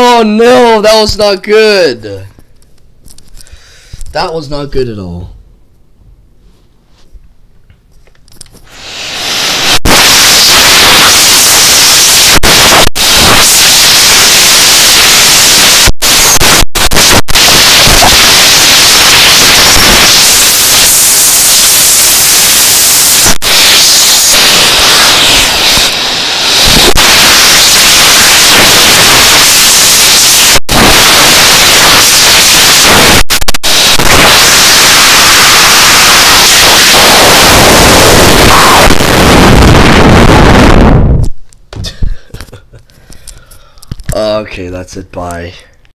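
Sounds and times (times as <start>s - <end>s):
vacuum cleaner airflow hiss: 8.6s - 40.0s.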